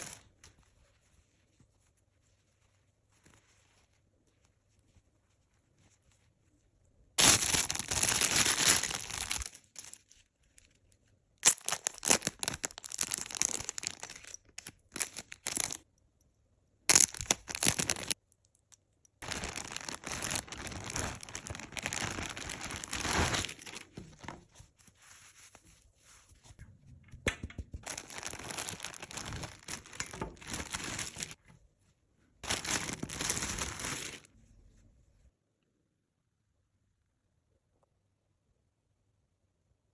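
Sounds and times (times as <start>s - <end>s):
packaging tearing and crinkling: 7.2s - 10.0s, 11.4s - 15.8s, 16.9s - 18.2s, 19.2s - 24.0s, 27.8s - 31.4s, 32.4s - 34.3s.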